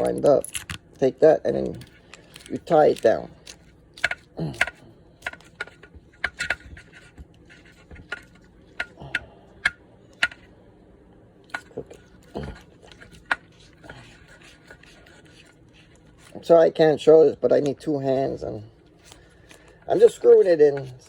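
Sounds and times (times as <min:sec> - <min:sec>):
cable connector parts clicking: 0:00.0 - 0:00.8.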